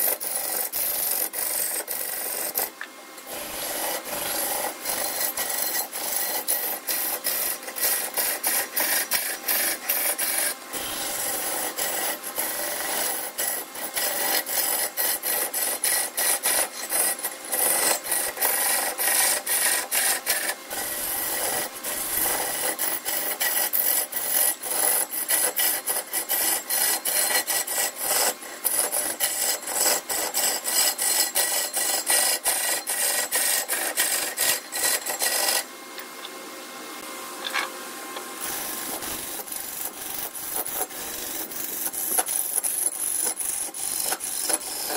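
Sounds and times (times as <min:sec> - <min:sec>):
hand tool scraping wood: 0:00.0 - 0:35.7, 0:38.4 - 0:44.9.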